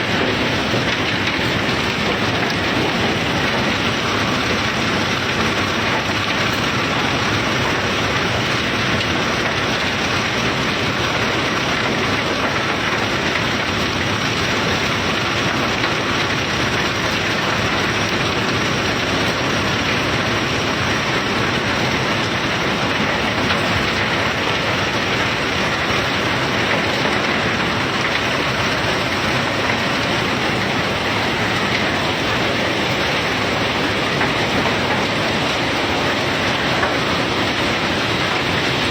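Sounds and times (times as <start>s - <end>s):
conveyor and bulk cargo rushing: 0.0s - 38.9s.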